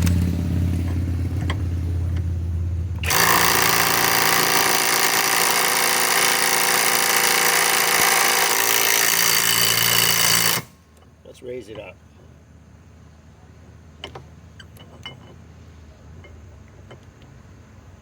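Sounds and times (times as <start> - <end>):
impact wrench hammering: 3.0 - 10.7.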